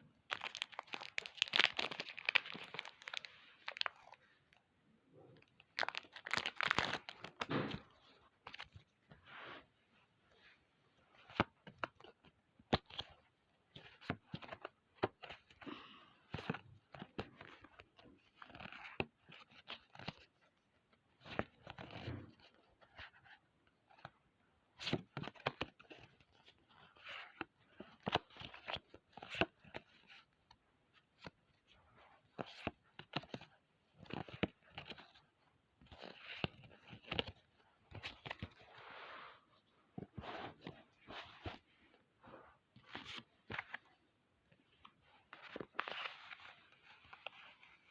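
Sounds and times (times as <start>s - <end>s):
foil wrapper crinkling and tearing: 0.3s - 4.1s, 5.7s - 7.4s.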